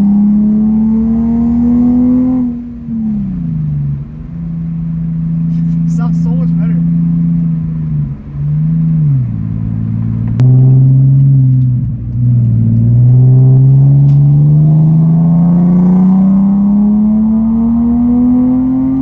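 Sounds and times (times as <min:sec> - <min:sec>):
car engine accelerating: 0:00.0 - 0:19.0.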